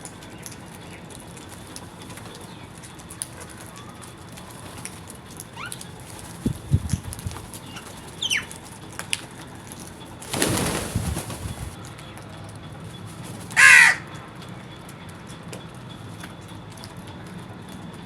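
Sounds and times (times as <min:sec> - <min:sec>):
crow cawing: 0:13.5 - 0:14.2.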